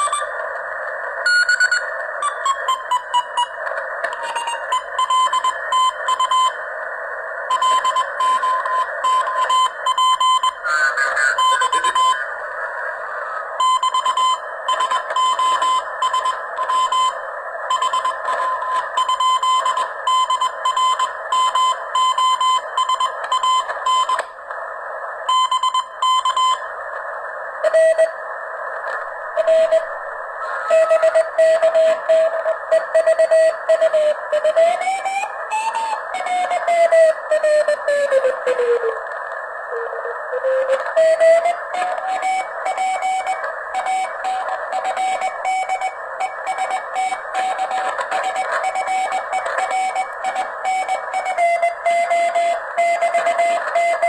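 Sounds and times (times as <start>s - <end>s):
radio receiver hiss: 0.0s - 54.0s
morse code tone: 7.5s - 12.2s, 13.6s - 24.2s, 29.4s - 30.1s, 39.7s - 54.0s.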